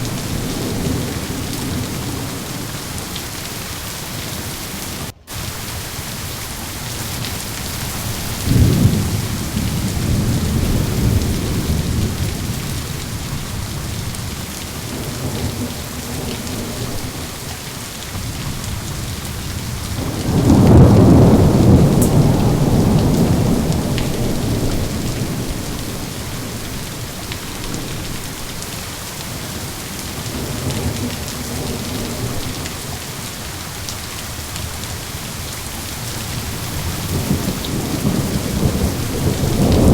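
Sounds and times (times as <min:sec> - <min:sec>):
thunder rumbling: 0:00.0 - 0:03.6, 0:05.0 - 0:28.6, 0:36.2 - 0:39.9
steady rain: 0:00.0 - 0:39.9.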